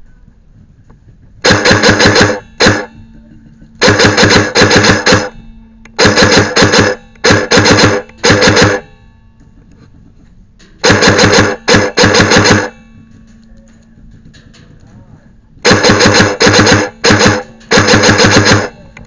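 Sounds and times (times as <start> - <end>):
airsoft gun firing bursts: 1.4 - 3.0, 3.8 - 5.4, 6.0 - 9.0, 10.8 - 12.8, 15.6 - 18.9
gun mechanism whirring: 1.4 - 3.0, 3.8 - 9.0, 10.8 - 12.8, 15.6 - 19.0.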